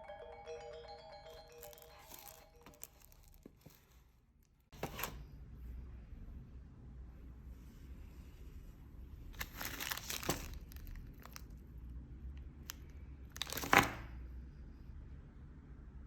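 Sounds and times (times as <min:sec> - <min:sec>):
packaging crinkling: 0:01.5 - 0:04.0, 0:09.4 - 0:11.5, 0:13.3 - 0:14.0.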